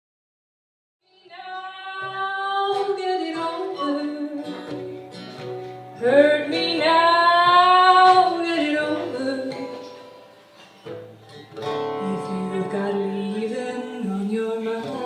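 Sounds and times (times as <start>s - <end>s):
woman singing: 1.0s - 5.0s, 5.9s - 10.1s, 11.9s - 15.0s
acoustic guitar: 1.0s - 15.0s.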